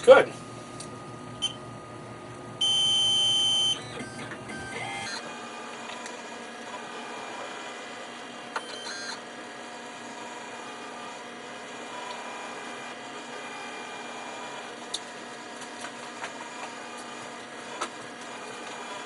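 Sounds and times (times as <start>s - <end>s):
loud electronic beep: 2.6s - 5.2s
stepper motors whirring: 3.3s - 7.7s.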